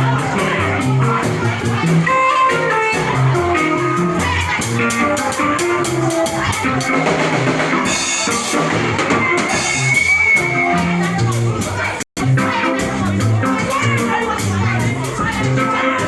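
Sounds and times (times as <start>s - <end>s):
drum kit beat: 0.0s - 16.0s
held keyboard or guitar notes: 0.0s - 16.0s.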